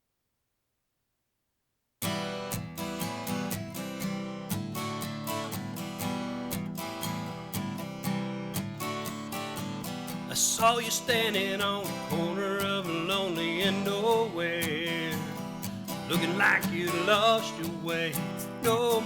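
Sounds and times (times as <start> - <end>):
acoustic guitar strumming: 2.0 - 19.0.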